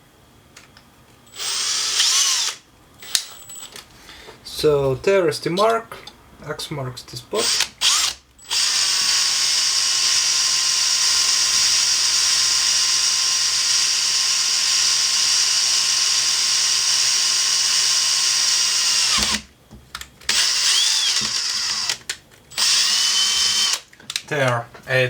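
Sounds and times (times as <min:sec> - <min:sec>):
electric drill whining: 0:01.3 - 0:03.7, 0:07.4 - 0:19.5, 0:20.3 - 0:23.9.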